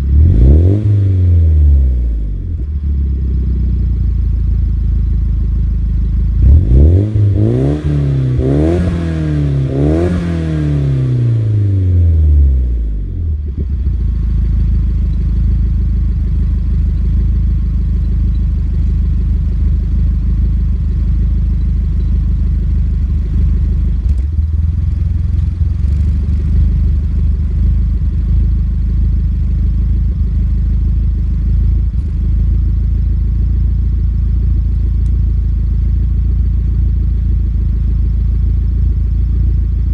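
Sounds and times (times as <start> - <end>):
car engine revving and idling: 0.0 - 39.9.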